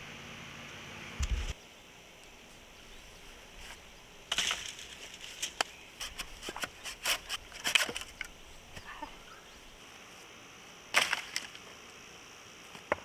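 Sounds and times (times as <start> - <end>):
wood snapping: 3.7 - 8.9, 10.9 - 11.6.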